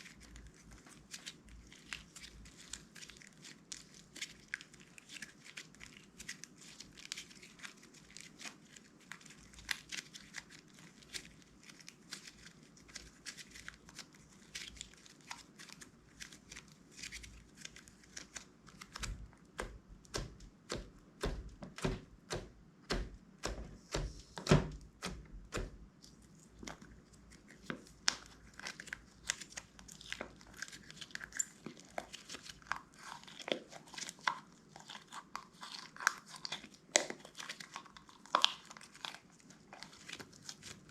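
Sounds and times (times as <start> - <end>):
deep slime squelches: 0.0 - 40.9
slime squished by hand: 0.0 - 40.9.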